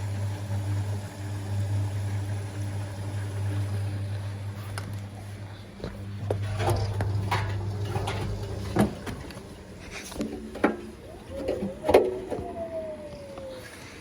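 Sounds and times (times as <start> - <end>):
washing machine hum: 0.0 - 14.0
washing machine clicks and knocks: 5.8 - 12.5.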